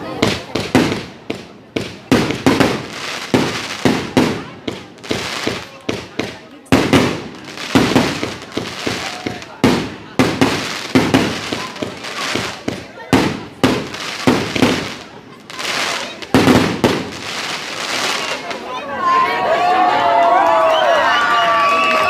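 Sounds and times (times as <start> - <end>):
fireworks banging: 0.0 - 18.7
fireworks crackling: 0.0 - 18.8.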